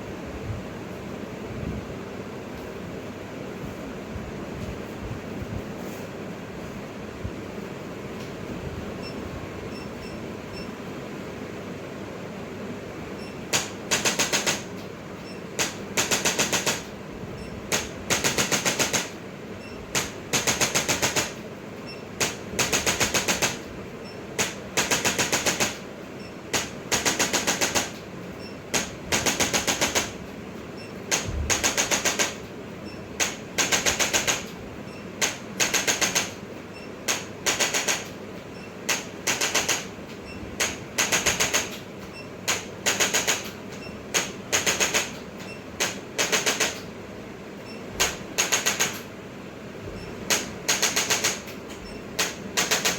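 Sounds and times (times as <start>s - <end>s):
fan-like hum: 0.0s - 52.9s
rapid mechanical clicking: 13.2s - 46.9s, 47.6s - 49.2s, 50.0s - 52.9s.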